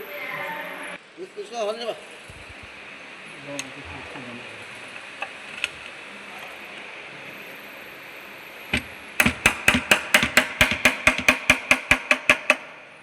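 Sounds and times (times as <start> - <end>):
hammer striking metal: 8.8 - 13.0.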